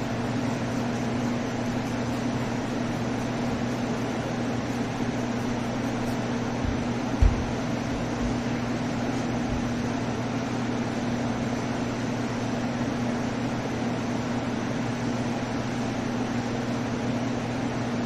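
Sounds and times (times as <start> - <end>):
electric machine droning: 0.0 - 12.4.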